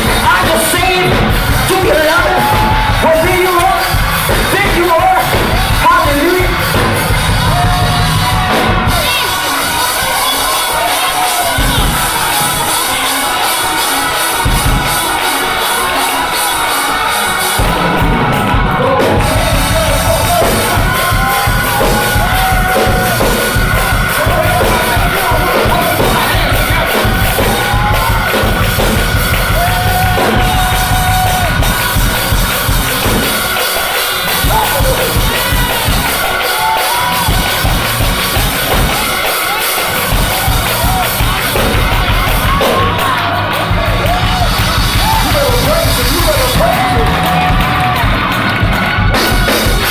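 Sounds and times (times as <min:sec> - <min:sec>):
band playing: 0:00.0 - 0:49.9
drum kit: 0:00.0 - 0:49.9
gospel choir singing: 0:04.6 - 0:37.2.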